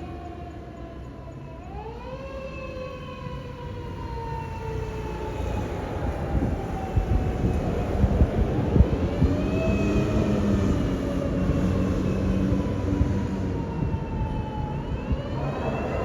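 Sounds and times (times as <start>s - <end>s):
truck engine and road noise: 0.0s - 16.0s
mechanical motor siren wailing: 11.4s - 16.0s.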